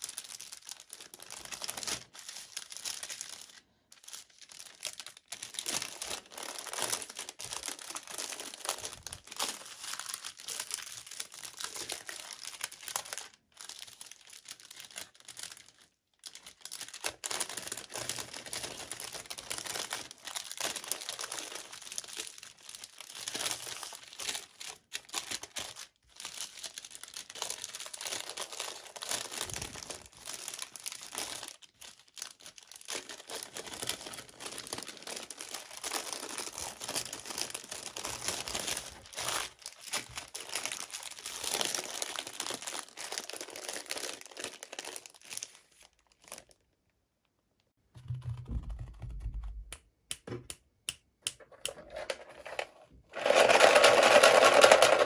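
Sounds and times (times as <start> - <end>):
packaging crinkling and tearing: 0.0 - 46.7, 51.5 - 55.0.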